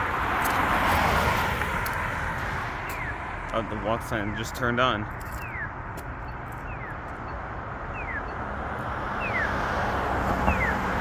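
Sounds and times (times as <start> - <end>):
street traffic: 0.0 - 11.0
pedestrian signal falling chirp: 5.4 - 9.8, 10.4 - 11.0.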